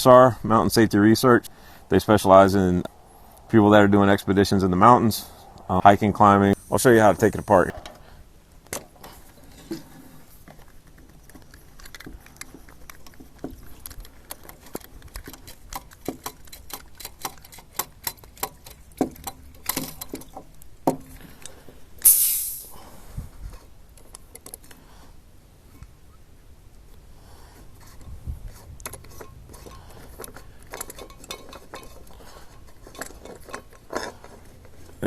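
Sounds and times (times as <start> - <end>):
metal stove parts clicking and rattling: 8.7 - 21.6, 28.8 - 35.0
short loud hiss: 22.0 - 22.9.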